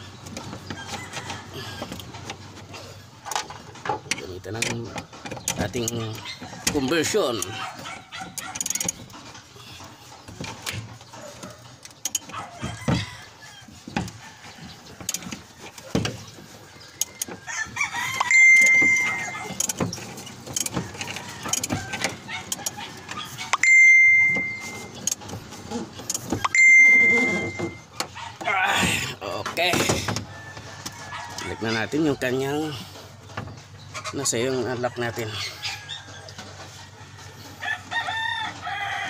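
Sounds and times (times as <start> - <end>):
light metallic clicks and knocks: 0.0 - 9.4, 18.1 - 25.4
rooster crowing: 0.6 - 2.0, 12.4 - 15.3, 16.5 - 19.7, 30.2 - 32.8, 34.6 - 39.0.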